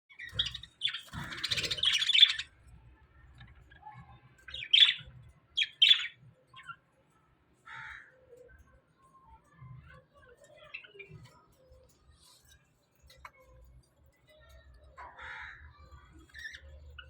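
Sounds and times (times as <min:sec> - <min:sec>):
budgerigars chirping: 0:00.2 - 0:02.5, 0:04.5 - 0:06.2.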